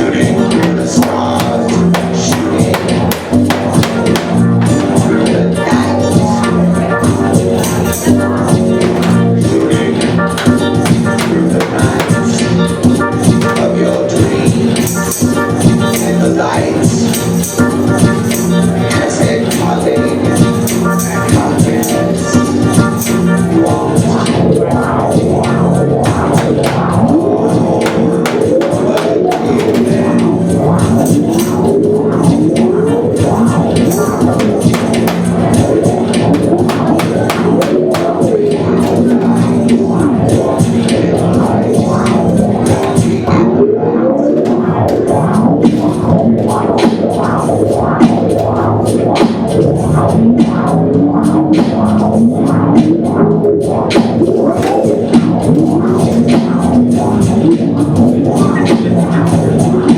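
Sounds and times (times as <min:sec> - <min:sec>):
sliding bending notes: 0:00.0 - 0:15.1, 0:24.9 - 0:32.2, 0:32.8 - 0:46.7
drum strokes: 0:00.2 - 0:06.4, 0:07.9 - 0:14.8, 0:26.0 - 0:31.3, 0:33.9 - 0:40.6, 0:44.4 - 0:46.2.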